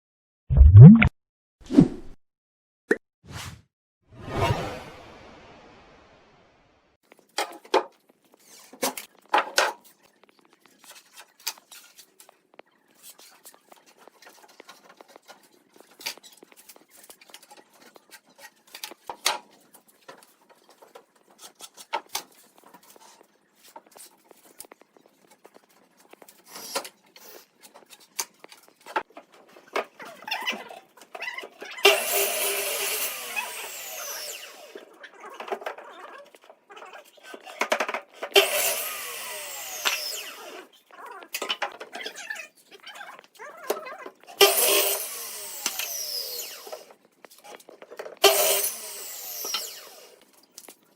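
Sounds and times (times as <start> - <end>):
power tool working wood: 31.8 - 34.8, 38.3 - 40.7, 44.4 - 46.9, 48.2 - 50.2.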